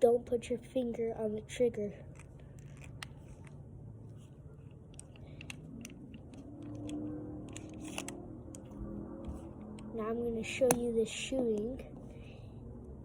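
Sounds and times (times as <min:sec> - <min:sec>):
low steady hum: 0:00.0 - 0:13.0
handling clicks and rustles: 0:02.0 - 0:12.0.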